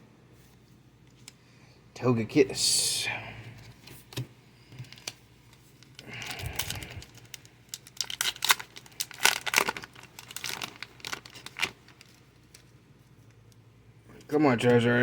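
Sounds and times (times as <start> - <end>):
foil wrapper rustling: 4.8 - 13.4
foil wrapper crackling torn open: 5.8 - 12.8.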